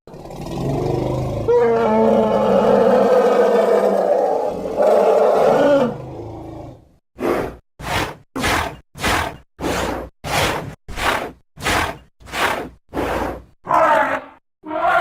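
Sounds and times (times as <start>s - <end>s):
dinosaur roar: 0.1s - 6.8s, 13.6s - 15.0s.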